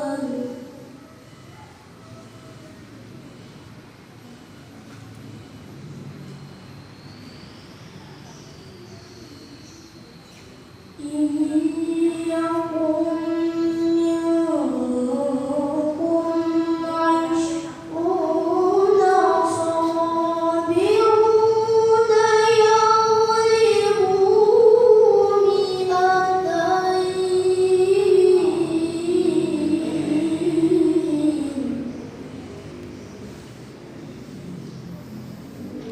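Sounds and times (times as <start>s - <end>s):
child reciting melodically: 0.0s - 1.2s, 10.9s - 32.3s.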